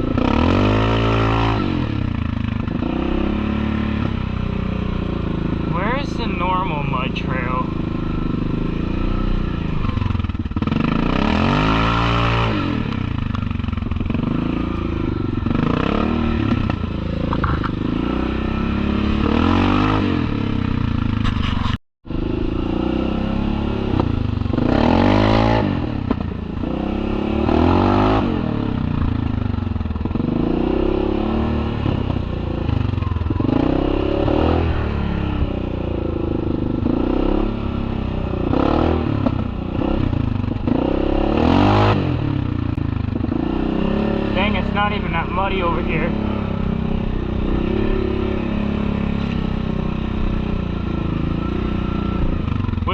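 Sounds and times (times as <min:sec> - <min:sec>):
atv engine revving: 0:00.0 - 0:52.9
clatter and scraping: 0:17.3 - 0:17.8, 0:21.1 - 0:21.8.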